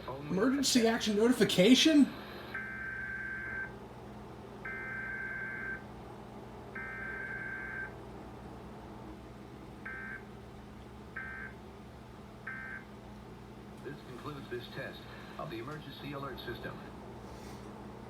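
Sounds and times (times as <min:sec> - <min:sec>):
buzzing data tone bursts: 0:06.8 - 0:07.9.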